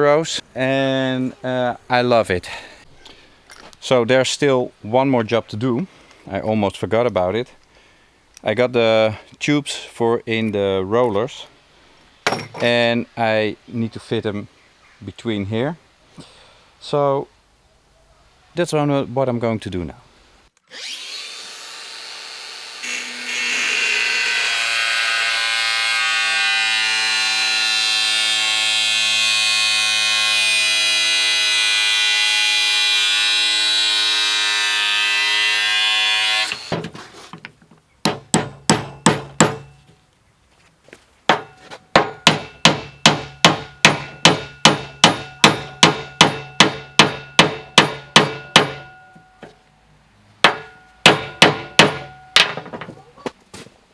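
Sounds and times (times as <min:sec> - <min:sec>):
power tool running: 0:20.7 - 0:24.7, 0:25.3 - 0:36.8
hammer blows on metal: 0:38.1 - 0:39.8, 0:41.3 - 0:49.5.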